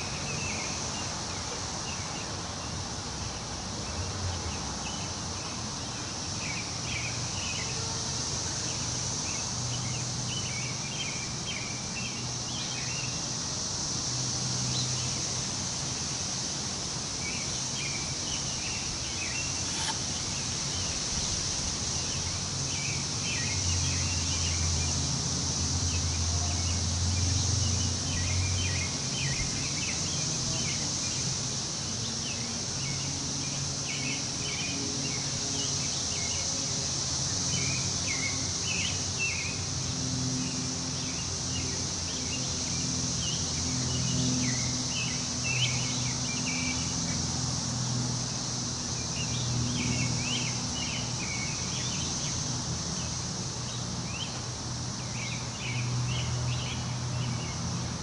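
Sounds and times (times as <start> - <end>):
wind through trees: 0.0 - 26.0, 27.2 - 58.0
high insect drone: 0.0 - 58.0.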